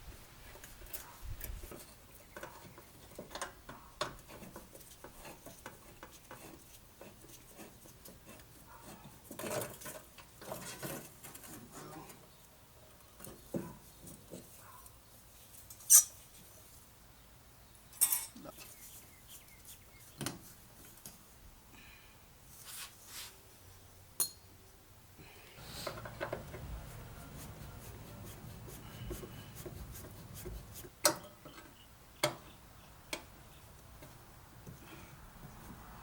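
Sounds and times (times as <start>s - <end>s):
shuffling and rustling: 22.5s - 23.5s.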